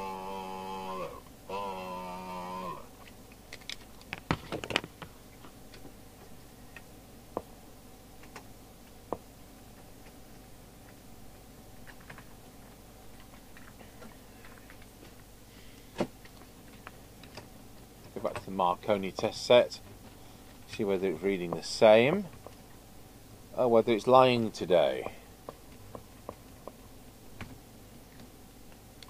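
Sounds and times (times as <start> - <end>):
faint steady hum: 0.0 - 29.0.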